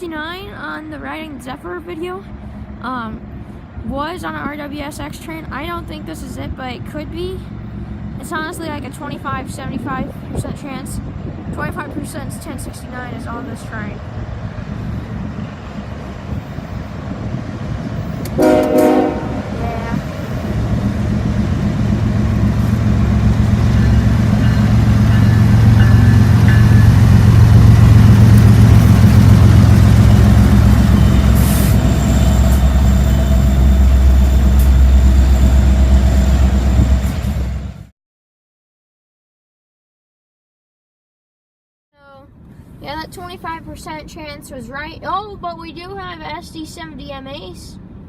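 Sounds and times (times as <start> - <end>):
locomotive engine rumble: 0.0 - 37.9
train horn blast: 18.2 - 20.0.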